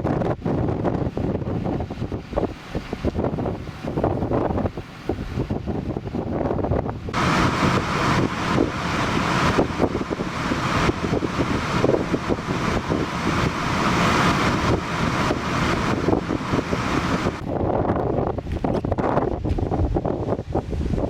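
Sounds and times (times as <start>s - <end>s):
wind buffeting the microphone: 0.0s - 21.0s
vehicle engine running: 7.1s - 17.9s.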